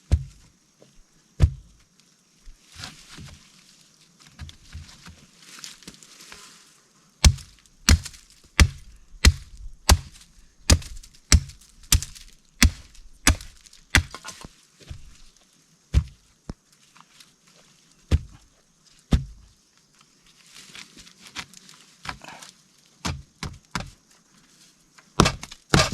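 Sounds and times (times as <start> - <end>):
rustling and scraping: 0.2 - 8.5, 10.1 - 22.6, 23.8 - 25.9
sharp blows chopping wood: 1.4 - 1.7, 7.2 - 14.4, 25.2 - 25.9.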